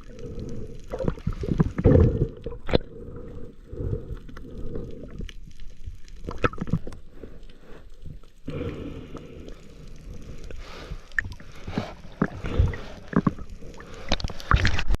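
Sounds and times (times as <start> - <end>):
water sloshing and splashing: 0.9 - 2.9, 10.0 - 15.0.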